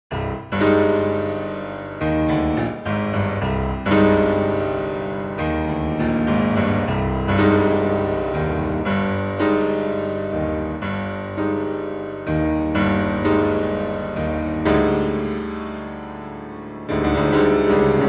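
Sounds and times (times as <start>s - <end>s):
slow piano-like keyboard chords: 0.1s - 18.0s.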